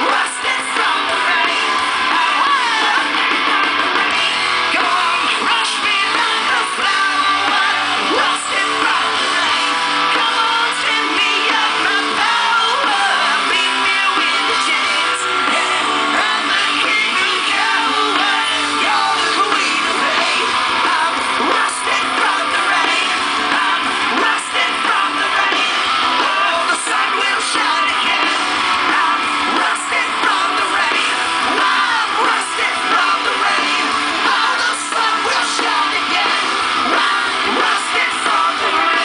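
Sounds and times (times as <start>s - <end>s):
loud shouted vocal: 0.0s - 39.0s
rock guitar: 0.0s - 39.0s.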